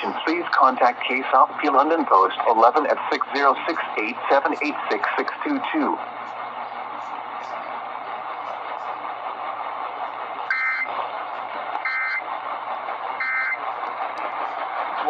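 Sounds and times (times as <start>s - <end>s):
radio static: 0.0s - 15.0s
warbling data tones: 10.5s - 11.0s.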